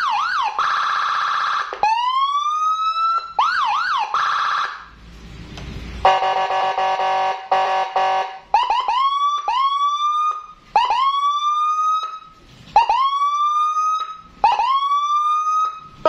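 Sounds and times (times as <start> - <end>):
rising siren whoops: 0.0 - 5.0, 8.5 - 16.0.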